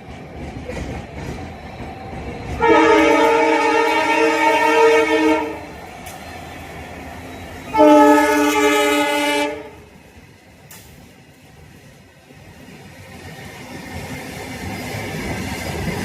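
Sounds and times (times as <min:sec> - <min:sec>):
train running noise: 0:00.0 - 0:16.0
train horn blasts: 0:02.6 - 0:05.7, 0:07.6 - 0:09.9.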